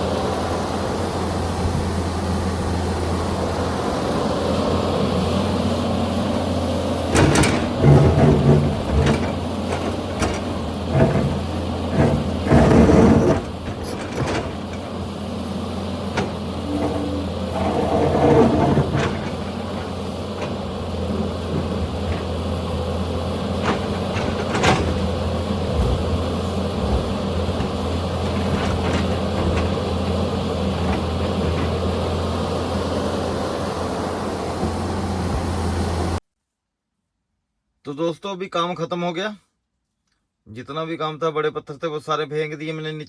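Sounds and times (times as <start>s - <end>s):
excavator diesel engine: 0.0s - 36.2s
rocks knocking and clattering: 7.1s - 22.6s, 23.4s - 31.9s.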